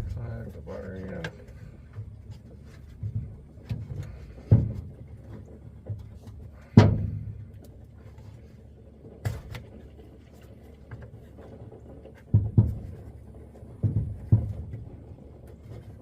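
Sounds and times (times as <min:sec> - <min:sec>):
thuds and knocks: 0:02.9 - 0:05.1, 0:06.7 - 0:07.5, 0:12.2 - 0:15.0.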